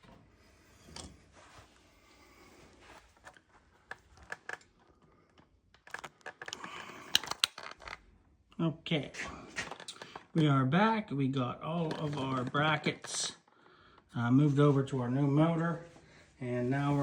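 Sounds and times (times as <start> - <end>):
metal parts clicking and clinking: 5.7 - 8.0.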